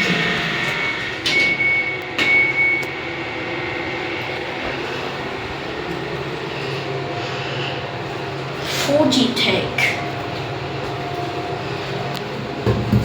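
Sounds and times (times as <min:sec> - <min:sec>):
lift car running drone: 0:00.0 - 0:13.0.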